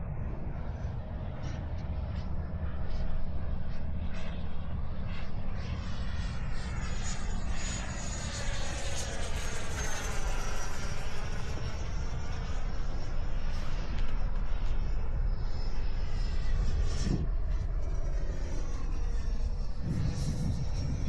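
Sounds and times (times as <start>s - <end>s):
rc jet whine flying past: 0.0s - 21.0s
wind on microphone: 14.5s - 21.0s.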